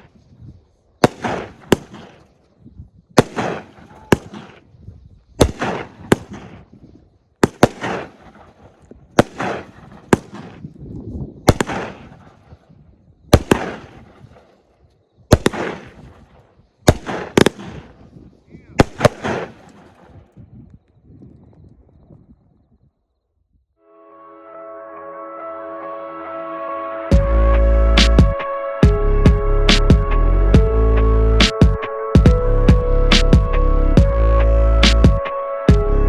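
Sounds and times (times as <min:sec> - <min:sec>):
firework bursts: 0:00.0 - 0:10.8, 0:11.5 - 0:20.3
firework crackling: 0:00.0 - 0:10.8, 0:11.5 - 0:20.3
firework launch pops: 0:01.0 - 0:04.8, 0:05.4 - 0:10.7.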